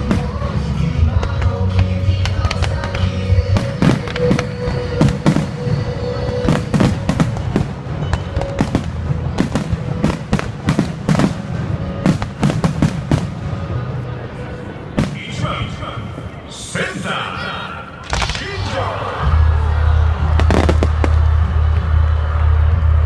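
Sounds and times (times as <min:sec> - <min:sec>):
fireworks cracking and banging: 0:00.0 - 0:14.0, 0:14.9 - 0:15.6, 0:18.0 - 0:19.4, 0:20.2 - 0:21.9
music playing: 0:00.0 - 0:23.0.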